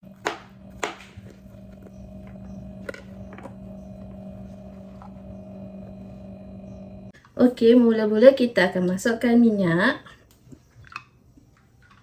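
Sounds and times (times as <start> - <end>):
steady low hum: 0.0 - 7.2.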